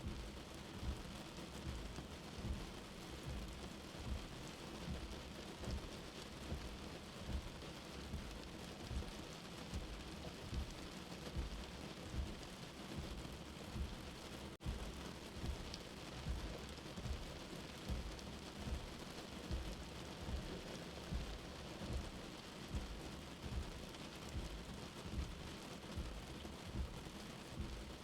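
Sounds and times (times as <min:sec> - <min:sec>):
low heartbeat thump: 0:00.0 - 0:28.0
steady rain: 0:00.0 - 0:28.0.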